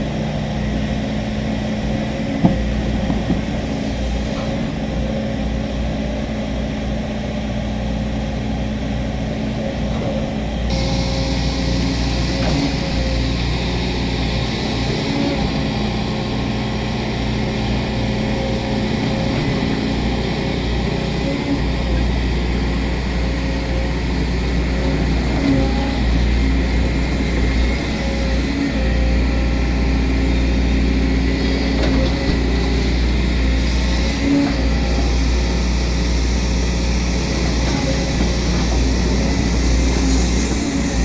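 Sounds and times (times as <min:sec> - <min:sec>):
excavator diesel engine running: 0:00.0 - 0:41.0.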